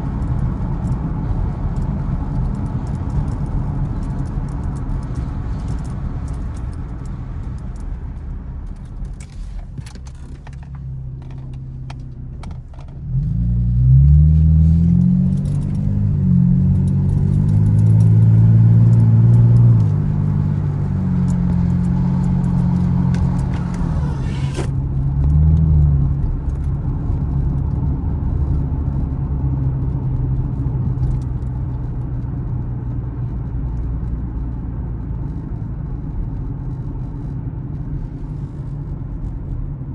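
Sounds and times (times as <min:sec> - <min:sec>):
car engine accelerating through gears: 0:12.8 - 0:29.1.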